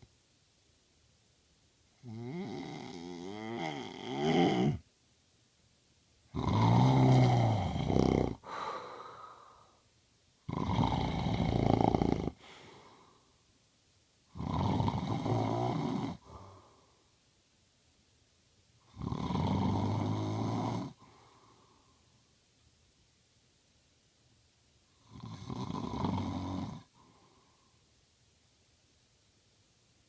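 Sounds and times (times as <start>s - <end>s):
man snoring: 2.0s - 4.8s, 6.3s - 9.7s, 10.4s - 13.1s, 14.3s - 16.7s, 18.9s - 21.1s, 25.0s - 27.0s
soft breath: 8.4s - 10.0s, 12.0s - 13.6s, 16.1s - 17.2s, 20.9s - 22.4s, 26.8s - 28.1s.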